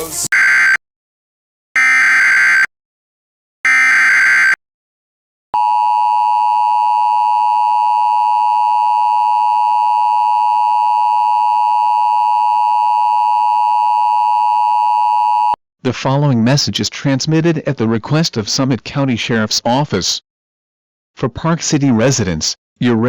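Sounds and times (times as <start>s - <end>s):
loud steady attention tone: 3.7s - 4.6s, 5.6s - 11.5s.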